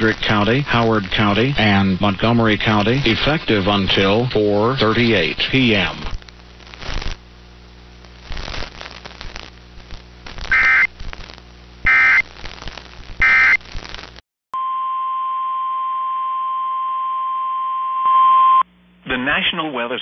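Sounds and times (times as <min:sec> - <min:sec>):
screeching digital data tones: 0:10.5 - 0:10.9, 0:11.9 - 0:12.2, 0:13.2 - 0:13.6.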